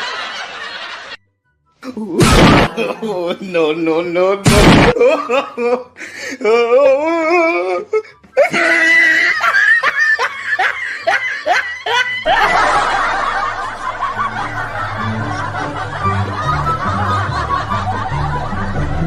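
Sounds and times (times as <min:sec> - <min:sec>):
music: 0:01.2 - 0:02.0, 0:12.4 - 0:19.0
person snickering: 0:02.2 - 0:03.2.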